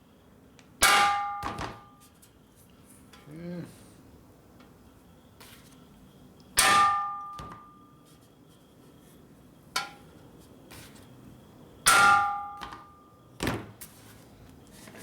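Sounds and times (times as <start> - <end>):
hammer clanging on steel tank: 0.8 - 1.9, 6.6 - 7.7, 11.9 - 12.9.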